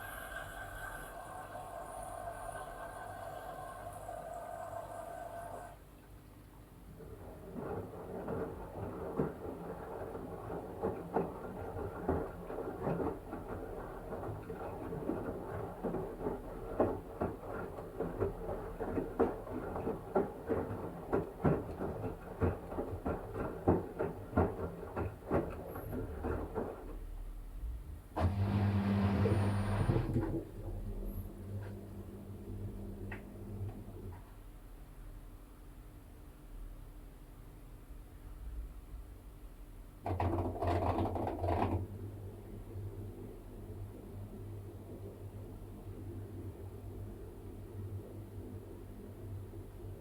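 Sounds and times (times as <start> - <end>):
washing machine sloshing: 0.0 - 5.8, 6.6 - 34.5
motor hum: 28.2 - 34.0.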